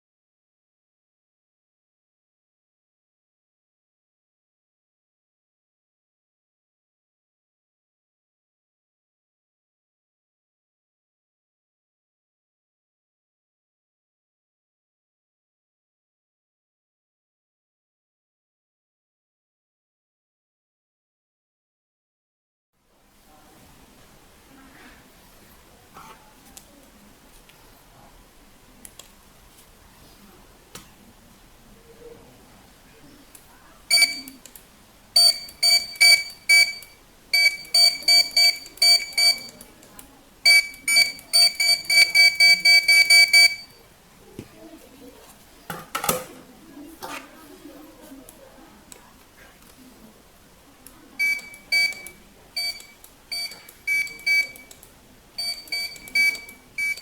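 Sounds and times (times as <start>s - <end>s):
barcode scanner beeping: 33.9s - 34.4s, 35.2s - 39.7s, 40.4s - 43.8s, 51.2s - 54.7s, 55.4s - 57.0s.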